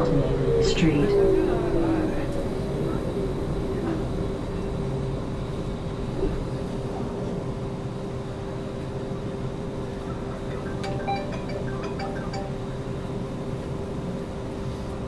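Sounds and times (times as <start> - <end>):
bus engine rumble and hum: 0.0 - 10.8.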